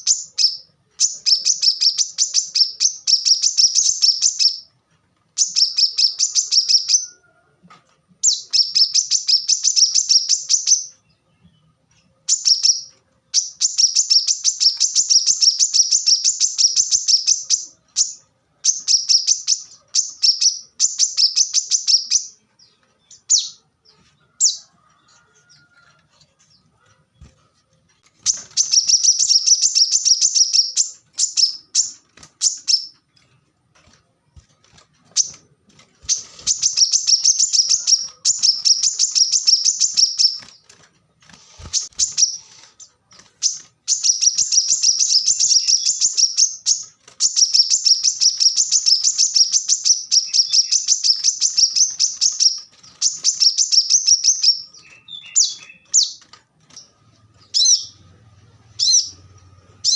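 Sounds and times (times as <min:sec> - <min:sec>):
sunbird high-pitched twittering: 0:28.3 - 0:33.0, 0:36.1 - 0:40.5, 0:43.4 - 0:56.2.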